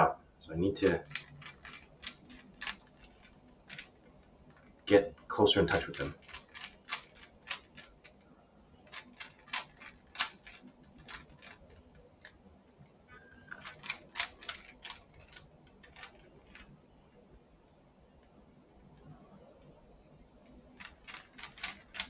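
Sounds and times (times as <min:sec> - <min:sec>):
puzzle cube clicking as twisted: 0:00.8 - 0:04.8, 0:05.7 - 0:08.2, 0:08.9 - 0:12.4, 0:13.5 - 0:16.7, 0:20.6 - 0:22.0.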